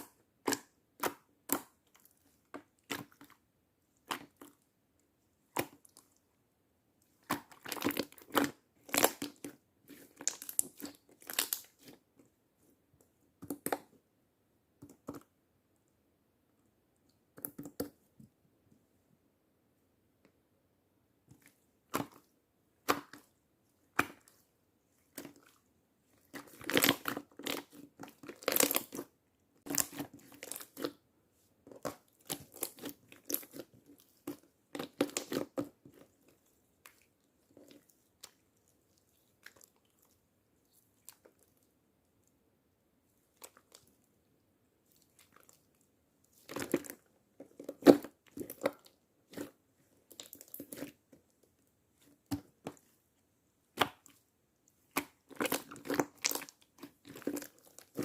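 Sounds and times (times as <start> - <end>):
slime squishing and clicking: 54.9 - 58.0.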